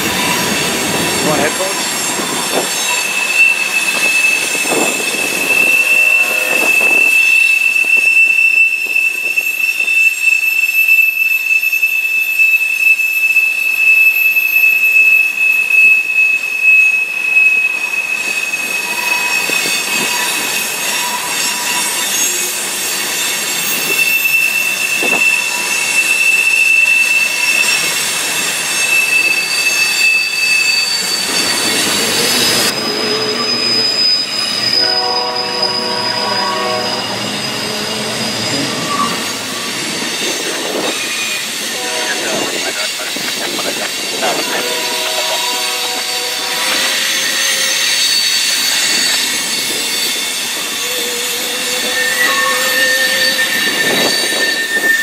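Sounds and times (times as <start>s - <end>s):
train wheels squealing on rails: 0.0s - 55.0s.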